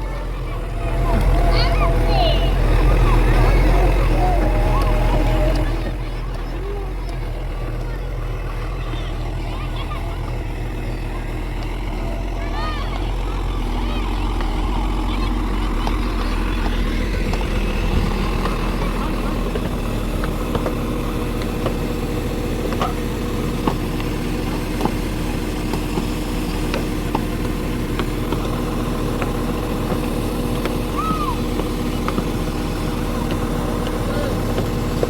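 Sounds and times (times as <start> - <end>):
engine idling: 0.0 - 35.0.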